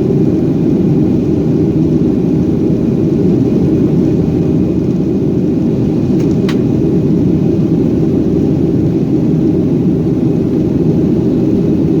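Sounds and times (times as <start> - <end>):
jet engine rumble in cabin: 0.0 - 12.0.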